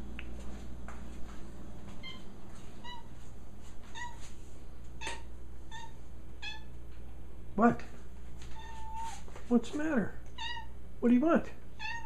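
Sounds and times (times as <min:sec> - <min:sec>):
cat meowing: 0:03.9 - 0:04.2, 0:05.0 - 0:06.7, 0:08.5 - 0:09.2, 0:10.4 - 0:10.7, 0:11.8 - 0:12.0.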